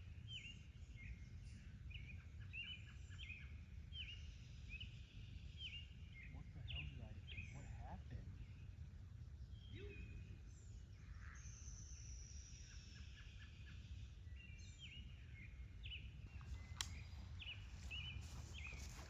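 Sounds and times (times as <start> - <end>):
birds chirping: 0.3 - 19.0
sharp click: 16.6 - 17.1.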